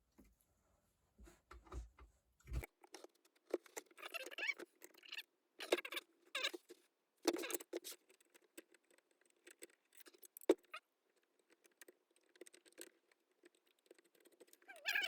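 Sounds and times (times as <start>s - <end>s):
metal parts clicking and rattling: 7.2s - 15.0s.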